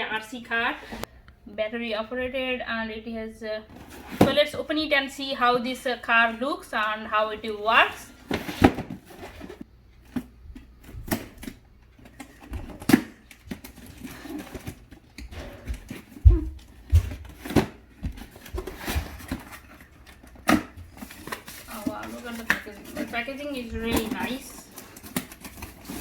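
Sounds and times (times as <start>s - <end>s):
heavy thumps: 15.3s - 19.3s.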